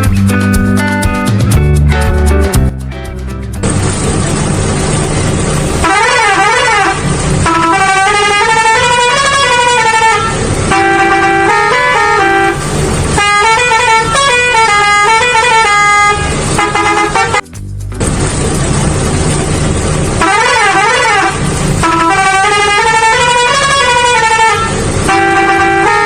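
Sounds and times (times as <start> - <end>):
steady noisy hiss: 3.6 - 5.9
musical vehicle horn: 5.8 - 17.5, 20.2 - 26.0.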